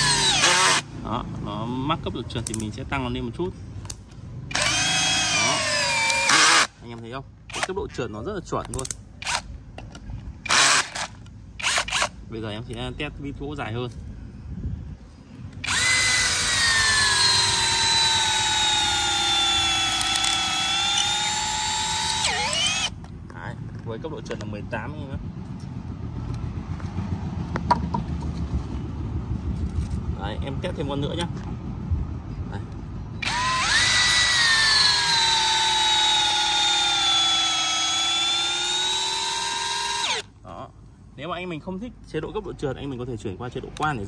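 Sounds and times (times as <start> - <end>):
cordless drill driving screw: 0.0 - 0.9, 4.5 - 6.8, 10.5 - 12.1, 15.6 - 23.0, 33.2 - 40.3.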